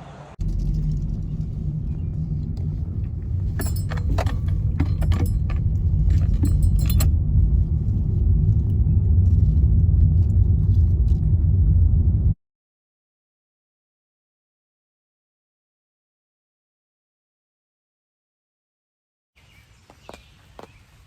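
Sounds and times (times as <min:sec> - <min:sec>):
car road rumble: 0:00.0 - 0:12.4
metallic jangles and clicks: 0:02.6 - 0:07.2.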